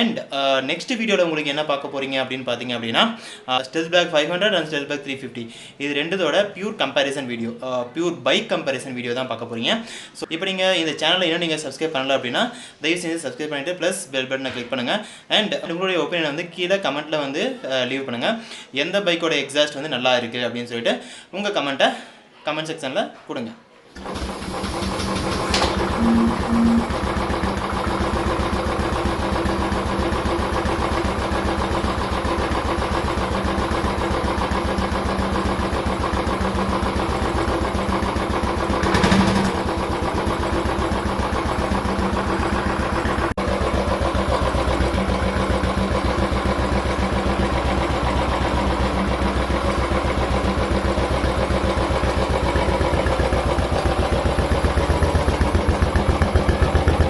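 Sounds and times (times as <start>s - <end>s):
motorcycle engine idling: 24.6s - 57.0s.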